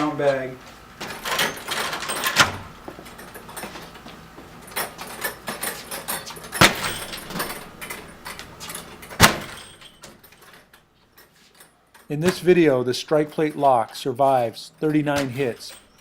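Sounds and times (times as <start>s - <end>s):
door and hardware rattling: 1.0s - 4.0s, 4.6s - 10.9s, 14.4s - 16.0s
heavy bag thudding against door: 6.5s - 8.1s, 9.0s - 10.0s.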